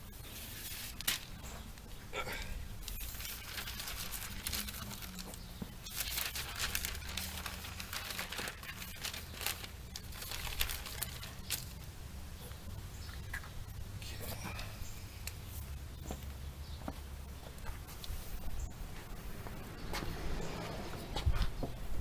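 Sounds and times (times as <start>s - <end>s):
newspaper rustling and crinkling: 0.2s - 2.0s, 2.8s - 12.6s.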